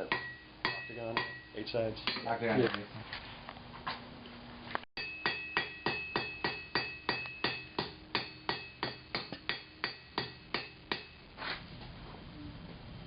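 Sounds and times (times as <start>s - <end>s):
hammer striking steel on anvil: 0.0s - 2.4s, 5.0s - 11.2s.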